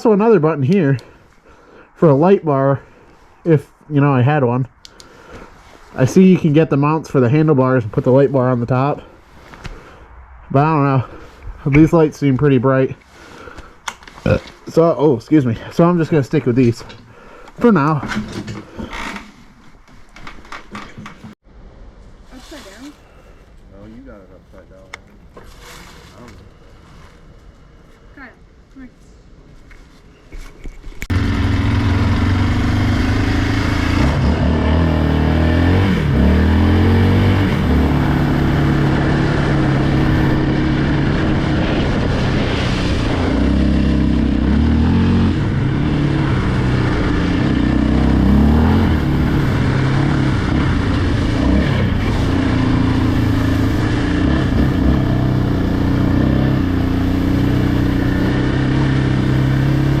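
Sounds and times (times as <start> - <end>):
atv engine accelerating: 31.1 - 60.0.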